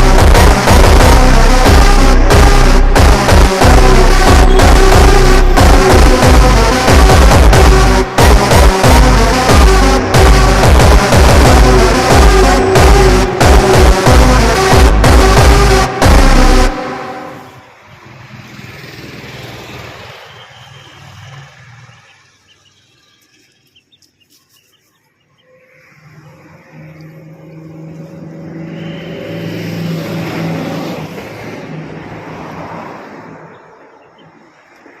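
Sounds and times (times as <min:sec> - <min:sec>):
vehicle engine passing: 0:25.6 - 0:35.0.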